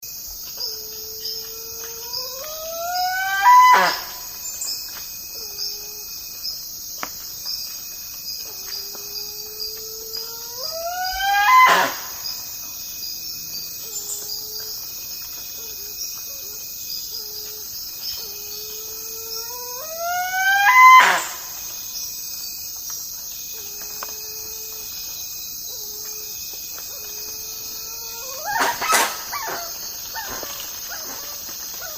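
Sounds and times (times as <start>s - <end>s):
insects chirping: 0.0s - 31.9s
bird call rising to harsh cry: 10.5s - 12.3s, 19.4s - 21.5s, 28.2s - 31.9s.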